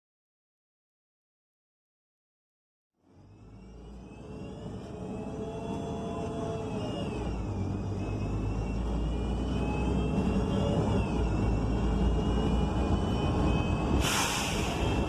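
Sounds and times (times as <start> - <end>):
bus engine low drone: 3.0 - 15.0
transmission whine: 3.1 - 15.0.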